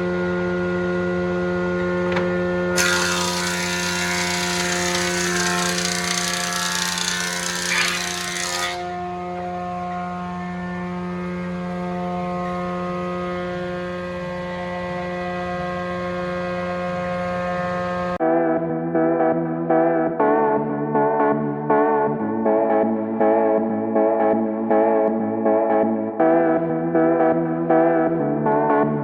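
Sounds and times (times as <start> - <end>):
music: 2.0 - 29.0
planer humming: 2.1 - 9.6
board being cut with loud hiss: 2.8 - 9.2.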